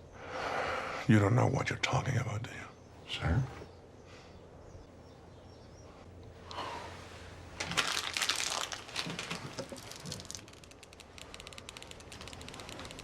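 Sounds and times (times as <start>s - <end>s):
wrapper crinkling: 7.6s - 13.0s.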